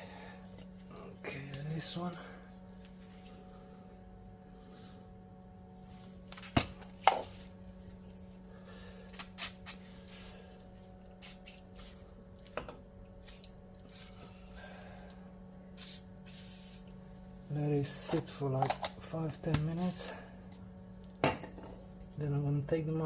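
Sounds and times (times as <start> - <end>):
low hum: 0.0 - 23.0
aerosol spray hiss: 9.1 - 10.3, 11.2 - 12.0, 13.2 - 14.4, 15.8 - 16.9.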